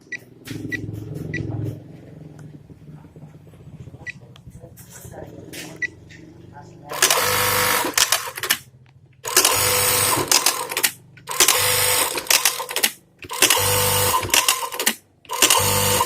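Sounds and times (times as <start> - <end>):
sewing machine stitching: 6.9 - 8.7, 9.3 - 16.0
sewing machine sharp clicks: 6.9 - 16.0.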